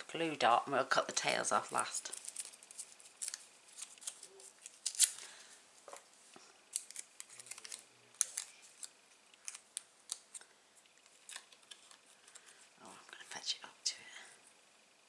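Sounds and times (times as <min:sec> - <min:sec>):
paper backing rustling: 0:01.2 - 0:06.0, 0:06.7 - 0:12.6.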